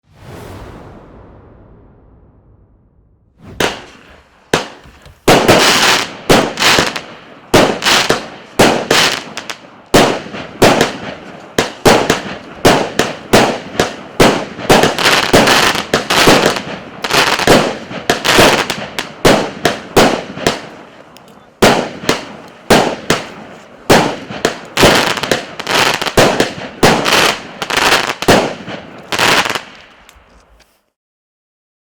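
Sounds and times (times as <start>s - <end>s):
firework launches and bursts: 0.0s - 20.9s, 21.6s - 30.1s
firework crackling: 3.4s - 30.2s.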